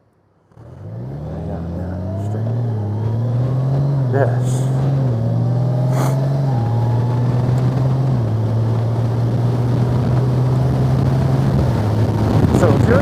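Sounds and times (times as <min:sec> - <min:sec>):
motorcycle engine running: 0:00.5 - 0:13.0
wind noise on microphone: 0:05.9 - 0:13.0.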